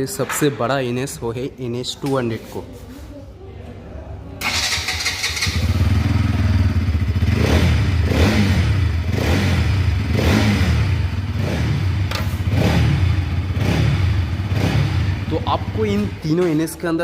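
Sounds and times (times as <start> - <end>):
motorcycle engine revving: 4.4 - 16.3.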